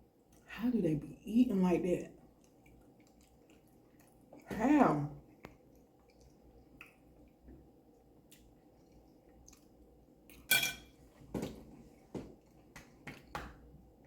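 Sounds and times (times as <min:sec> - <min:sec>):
tableware clinking: 0:10.5 - 0:11.0.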